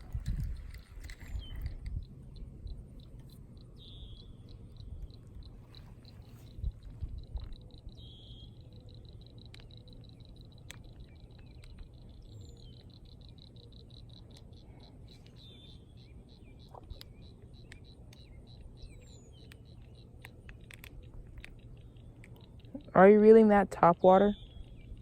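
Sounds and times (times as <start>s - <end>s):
low steady rumble: 0.0s - 25.0s
animal high-pitched clicking calls: 7.2s - 23.0s.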